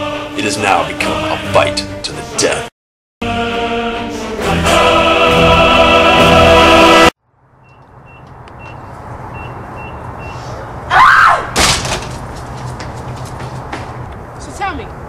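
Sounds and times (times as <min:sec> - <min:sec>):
short electronic beeps: 0:07.6 - 0:10.5
loud cry: 0:10.9 - 0:11.6.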